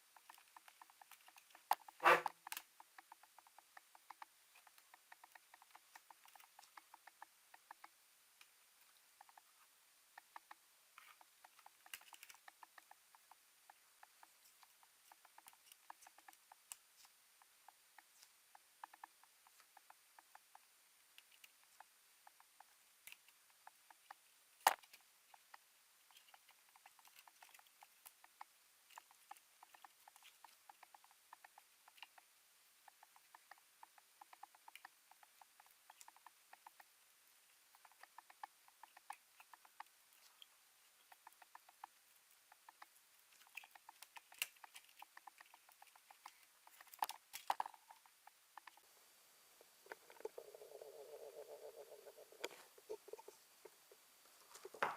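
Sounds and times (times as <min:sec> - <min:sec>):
small clicks and taps: 0:00.0 - 0:09.6, 0:10.2 - 0:36.9, 0:37.6 - 0:48.9.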